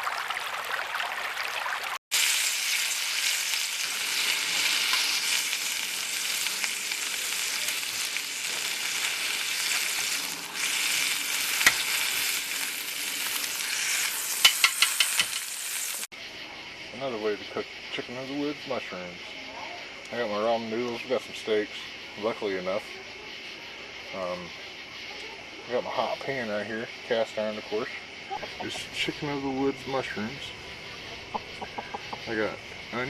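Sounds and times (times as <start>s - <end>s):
mushrooms sizzling in butter: 2.1s - 16.1s.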